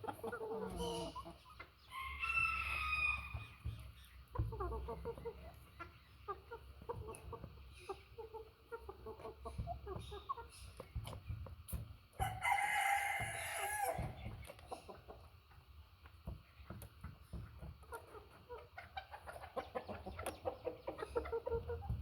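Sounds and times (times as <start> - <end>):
chickens clucking: 0.0 - 22.0
rooster crowing: 2.0 - 3.3, 12.2 - 14.1.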